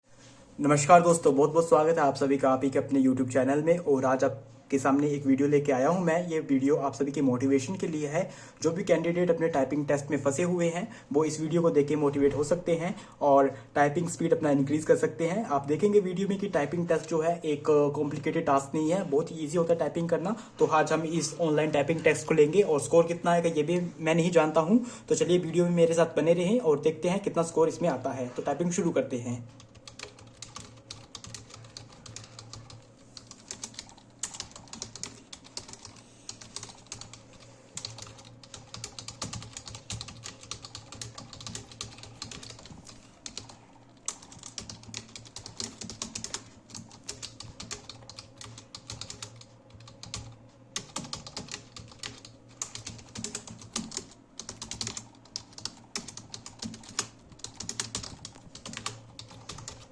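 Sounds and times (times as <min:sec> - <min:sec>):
fast typing on computer keyboard: 0:29.6 - 0:59.9.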